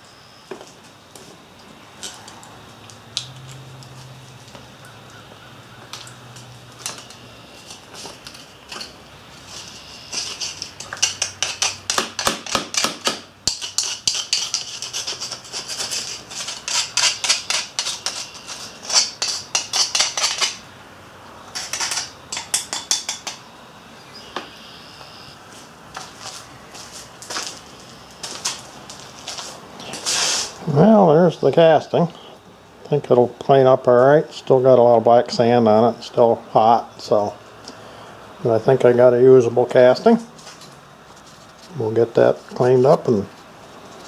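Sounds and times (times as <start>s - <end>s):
metal casting clinking and scraping: 6.0s - 20.7s, 21.4s - 23.5s.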